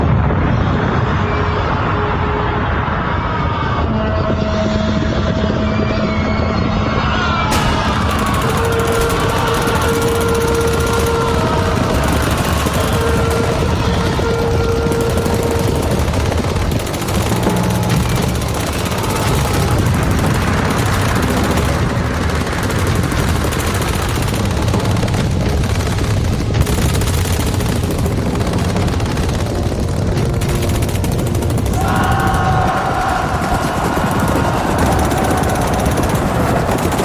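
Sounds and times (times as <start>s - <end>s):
dense rapid rattling: 7.5s - 37.0s
steady tones: 7.5s - 37.0s.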